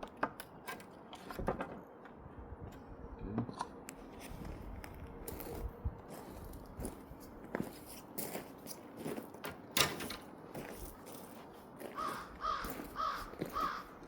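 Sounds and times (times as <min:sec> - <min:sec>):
crow cawing: 0:12.0 - 0:14.0.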